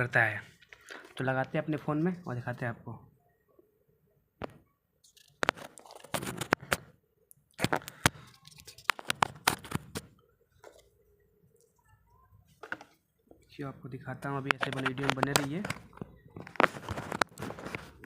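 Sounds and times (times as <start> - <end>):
plastic clicks and scrapes: 4.4 - 6.9, 7.5 - 10.9, 12.5 - 13.0, 14.2 - 18.0.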